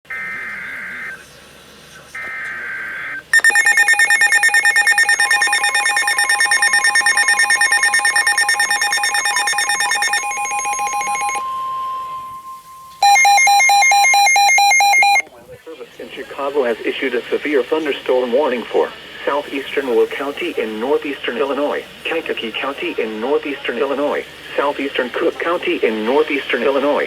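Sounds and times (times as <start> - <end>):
weather radio alarms beeping: 0.1 - 1.3, 2.2 - 15.3
steady warning tone: 2.2 - 15.2.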